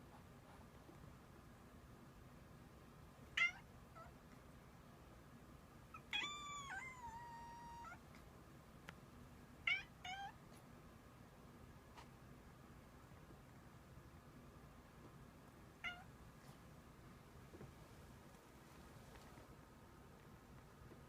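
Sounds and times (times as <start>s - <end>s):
cat howling: 6.1s - 8.0s.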